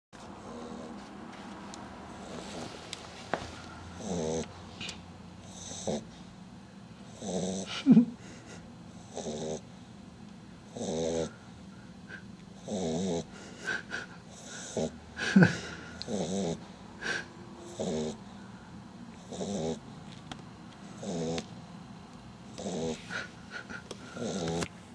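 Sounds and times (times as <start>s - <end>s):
puppy snoring: 0.3s - 1.2s, 2.1s - 6.3s, 7.0s - 9.8s, 10.7s - 18.4s, 19.1s - 20.0s, 20.8s - 21.5s, 22.5s - 24.7s
sharp snorts: 12.1s - 18.2s, 22.6s - 24.7s.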